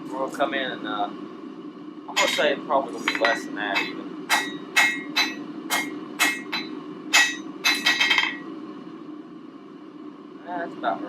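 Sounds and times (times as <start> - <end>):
low hum: 0.0 - 10.4
hammer ringing on anvil: 2.2 - 8.4.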